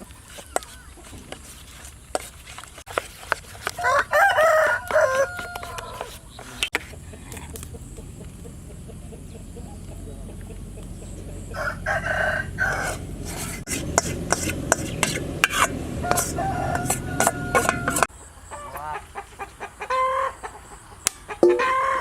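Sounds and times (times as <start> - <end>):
rooster crowing: 3.7 - 6.3, 11.4 - 13.6, 15.6 - 19.0, 19.9 - 20.4, 21.5 - 22.0.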